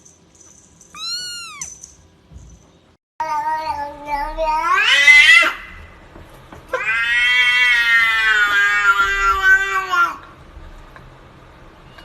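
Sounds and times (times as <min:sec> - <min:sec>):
cat meowing: 0:01.0 - 0:01.8.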